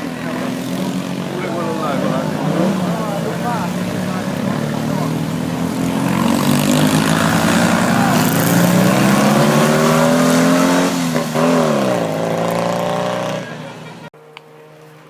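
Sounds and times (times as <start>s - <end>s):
race car engine accelerating: 0.0s - 15.0s.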